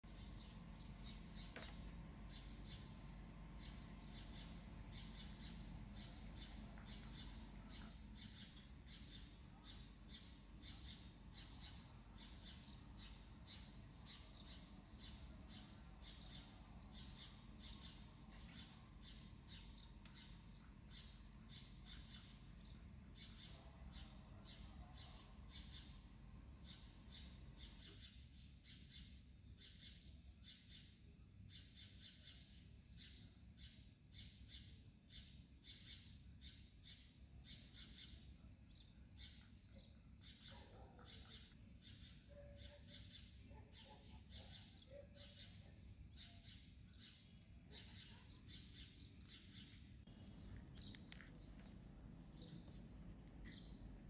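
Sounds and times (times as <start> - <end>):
steady low hum: 0.0 - 27.9, 47.0 - 54.0
bird chirping: 0.0 - 54.0.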